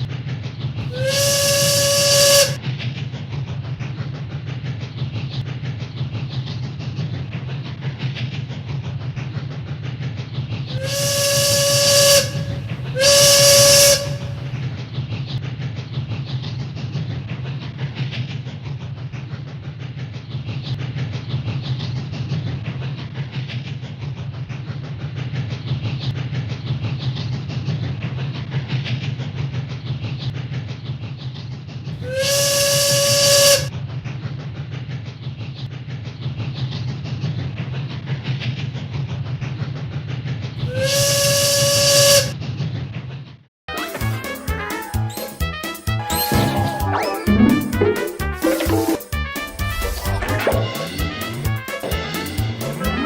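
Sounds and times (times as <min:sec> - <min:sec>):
loud whistle blasts: 0:00.8 - 0:02.6, 0:10.8 - 0:14.6, 0:32.0 - 0:33.7, 0:40.6 - 0:42.4, 0:43.7 - 0:53.0.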